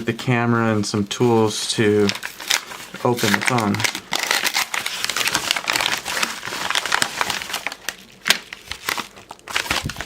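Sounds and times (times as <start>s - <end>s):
packaging crinkling: 2.0s - 10.0s.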